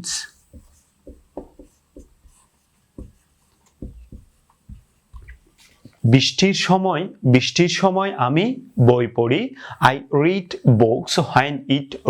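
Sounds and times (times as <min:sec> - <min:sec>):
pen writing on a surface: 0:00.3 - 0:05.8.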